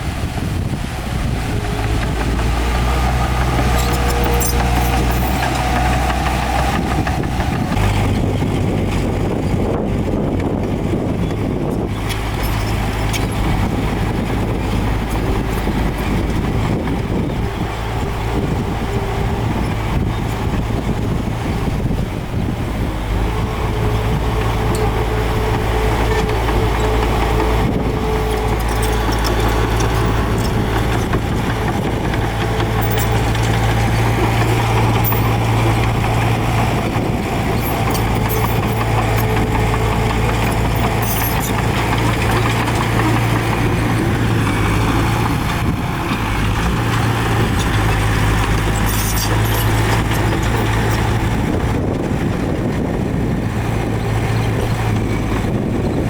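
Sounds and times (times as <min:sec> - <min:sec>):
diesel engine running: 0:00.0 - 0:56.0
metallic clinks and rattles: 0:03.7 - 0:06.0, 0:28.2 - 0:31.2, 0:32.5 - 0:35.6, 0:37.5 - 0:43.2, 0:48.4 - 0:51.2.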